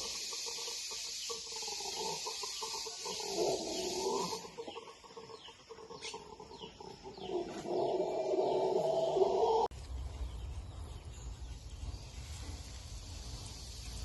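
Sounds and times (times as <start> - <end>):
chickens clucking: 0.0 - 9.7
small birds chirping: 0.0 - 14.0.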